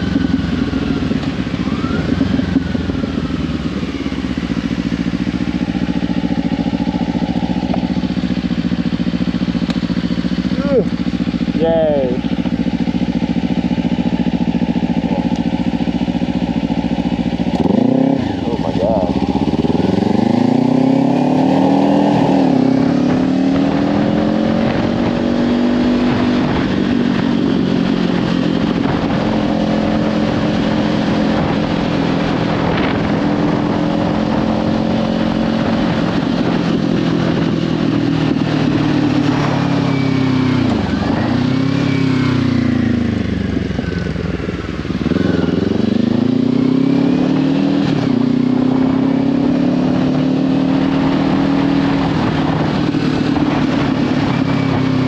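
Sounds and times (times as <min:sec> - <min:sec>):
wind noise on microphone: 0:00.0 - 0:09.2, 0:12.5 - 0:55.0
motorcycle engine revving: 0:00.0 - 0:55.0.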